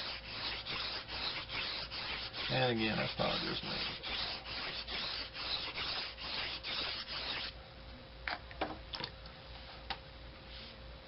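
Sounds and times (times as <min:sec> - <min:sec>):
knife scraping on whetstone: 0:00.0 - 0:07.5.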